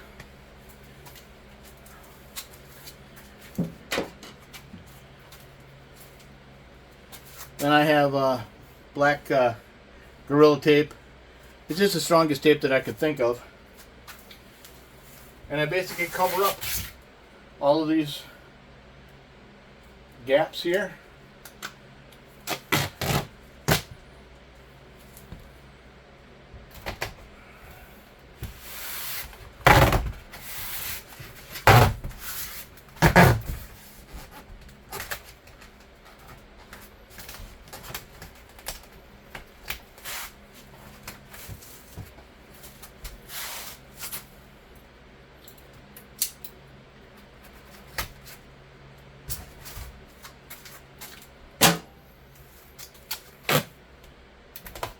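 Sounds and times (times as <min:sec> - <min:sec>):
knocks and rustles of handling: 0:00.0 - 0:07.7, 0:28.4 - 0:44.3, 0:49.2 - 0:51.4.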